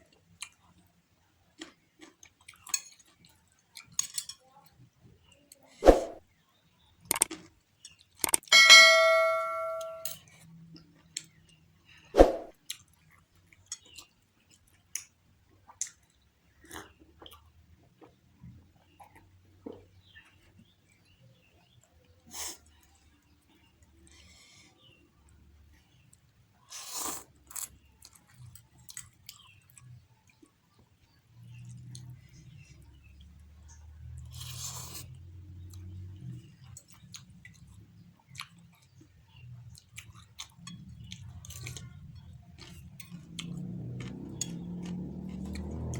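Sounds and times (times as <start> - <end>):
chewing clicks: 7.1 - 8.5, 34.2 - 45.9
utensil clinking against bowl: 8.4 - 10.1
chewing with mouth clicks: 12.6 - 18.2, 18.8 - 21.1, 26.1 - 30.5, 33.7 - 45.9.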